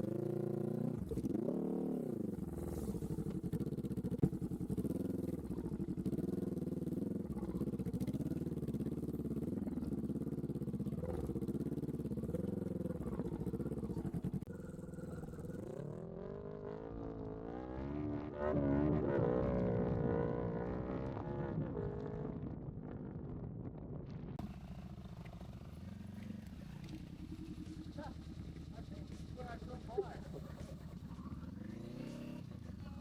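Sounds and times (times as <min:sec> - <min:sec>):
motorcycle engine revving: 0:00.0 - 0:33.0.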